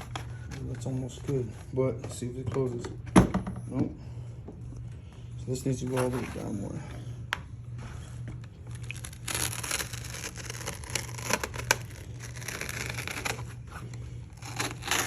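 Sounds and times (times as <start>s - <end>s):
foam tearing and scraping: 8.7s - 15.0s.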